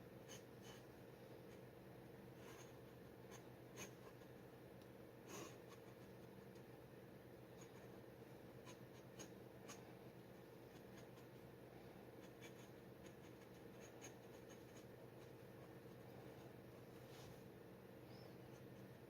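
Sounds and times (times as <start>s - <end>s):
steady low hum: 0.0s - 19.0s
dip pen scratching on paper: 2.4s - 4.4s, 5.3s - 6.5s, 8.6s - 9.8s, 10.6s - 11.4s, 12.2s - 16.5s.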